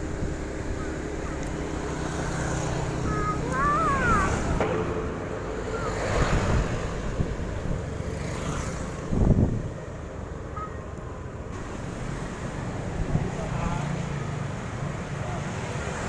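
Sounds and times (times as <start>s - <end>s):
wind buffeting microphone: 2.6s - 8.2s, 8.9s - 10.0s.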